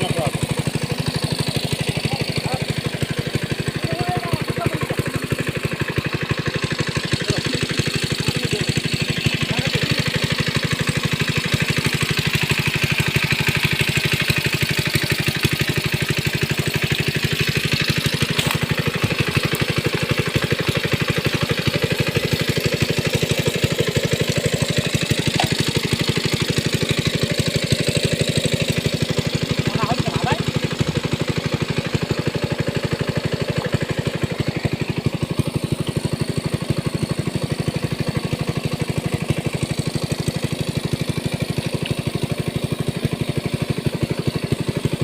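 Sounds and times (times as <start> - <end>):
small engine idling: 0.0 - 45.0.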